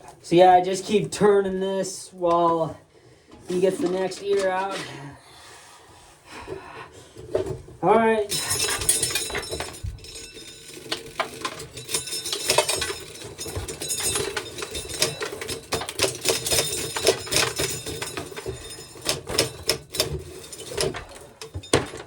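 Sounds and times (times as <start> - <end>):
corn sheller clicking and rattling: 3.5 - 4.9, 8.3 - 22.0.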